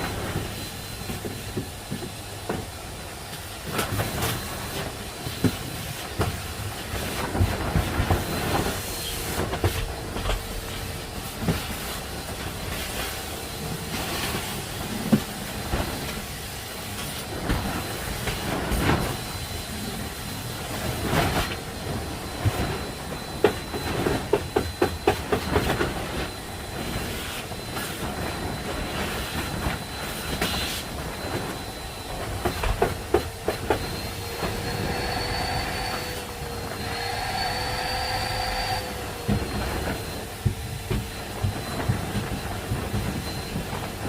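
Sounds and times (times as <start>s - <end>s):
steady whine: 0.0s - 44.0s.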